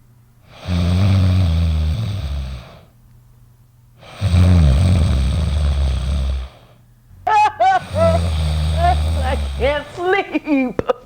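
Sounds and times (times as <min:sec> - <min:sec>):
deep rattling snoring: 0:00.5 - 0:02.9, 0:04.0 - 0:06.8, 0:07.8 - 0:10.2.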